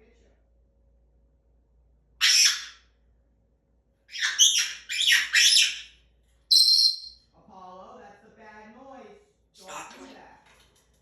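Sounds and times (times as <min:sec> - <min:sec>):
parrot screeching squawks: 0:02.2 - 0:02.8, 0:04.1 - 0:05.9, 0:06.5 - 0:07.2.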